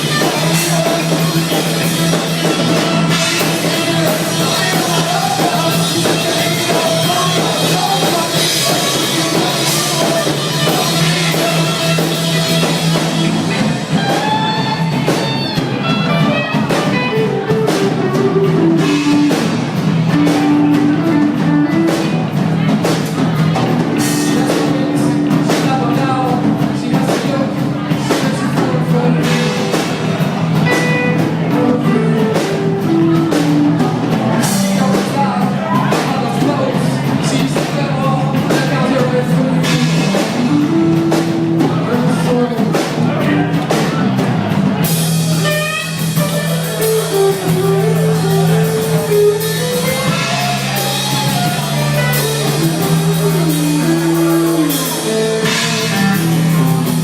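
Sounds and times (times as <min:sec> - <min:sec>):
drum kit: 0:00.0 - 0:57.0
guitar: 0:00.0 - 0:57.0
held bass notes: 0:00.0 - 0:57.0.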